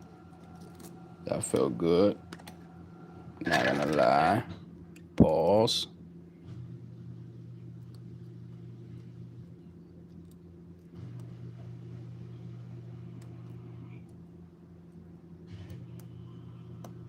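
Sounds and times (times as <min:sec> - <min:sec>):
low hum: 0:06.0 - 0:17.0.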